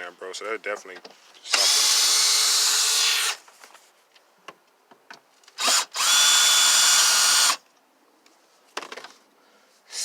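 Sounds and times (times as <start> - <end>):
power drill whine: 1.5 - 3.4, 5.6 - 7.6.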